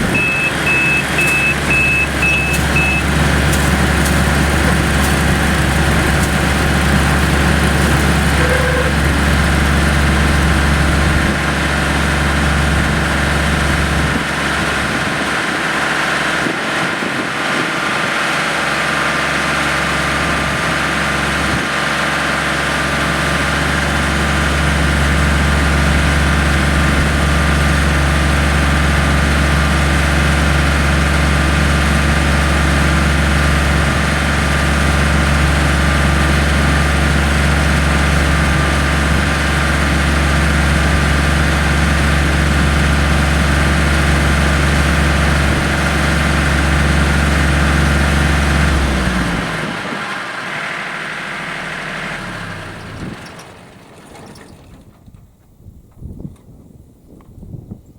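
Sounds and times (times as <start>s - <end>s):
combine harvester running: 0.0s - 55.4s.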